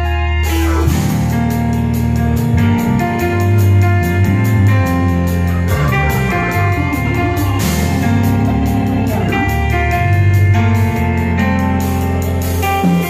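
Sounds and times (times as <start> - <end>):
bass line: 0.0 - 13.0
organ chords: 0.0 - 13.0
live band playing: 0.2 - 11.2.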